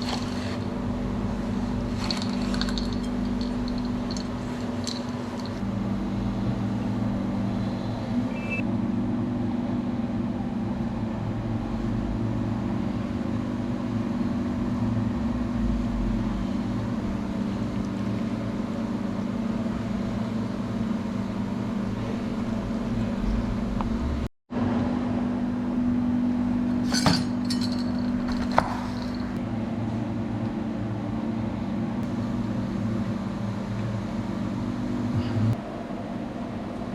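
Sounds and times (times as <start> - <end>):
low mechanical hum: 0.0 - 36.9.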